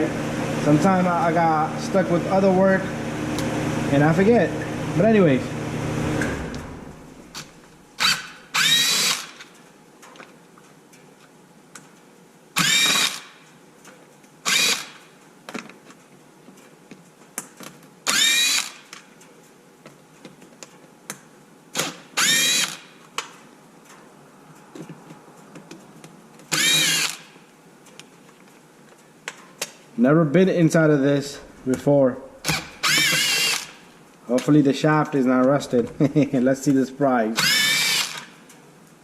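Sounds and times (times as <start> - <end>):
cordless drill motor whine: 5.9 - 9.5, 12.6 - 13.4, 14.5 - 15.0, 18.1 - 18.9, 21.8 - 22.9, 26.5 - 27.4, 32.4 - 33.9, 37.4 - 38.4.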